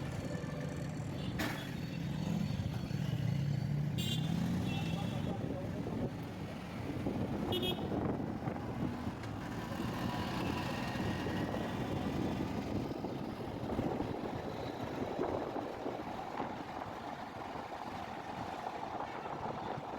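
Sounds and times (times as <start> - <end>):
road traffic rumble: 0.0 - 19.9.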